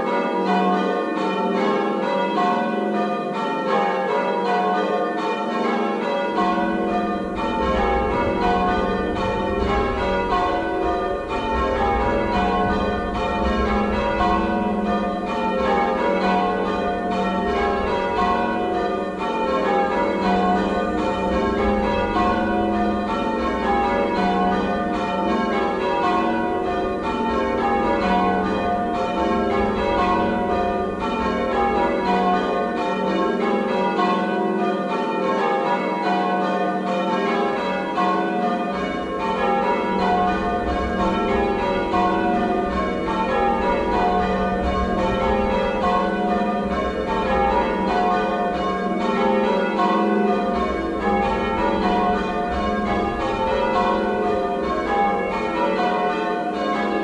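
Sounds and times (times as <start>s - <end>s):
church bells change ringing: 0.0s - 57.0s
low rumble: 8.0s - 15.3s.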